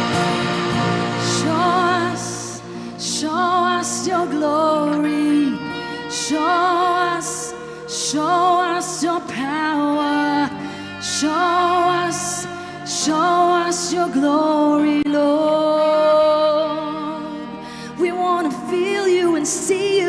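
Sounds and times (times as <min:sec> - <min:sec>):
keyboard and band backing: 0:00.0 - 0:03.2
person singing long notes: 0:00.0 - 0:20.0.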